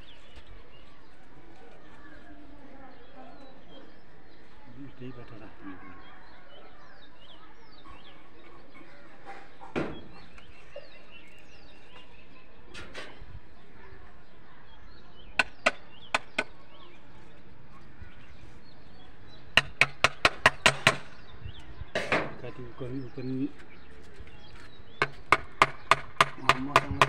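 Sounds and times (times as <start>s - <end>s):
sharp knocks on wood: 9.7s - 10.1s, 15.4s - 16.6s, 19.6s - 21.2s, 25.0s - 27.0s.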